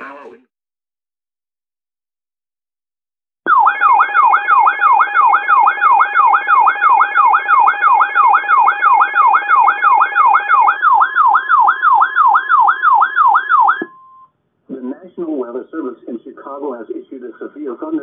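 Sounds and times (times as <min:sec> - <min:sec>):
steady beeping tones: 0:03.5 - 0:14.3.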